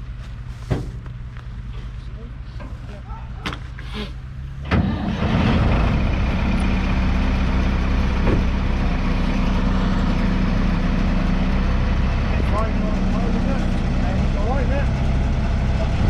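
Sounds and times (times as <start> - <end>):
diesel engine revving up: 3.8 - 16.0.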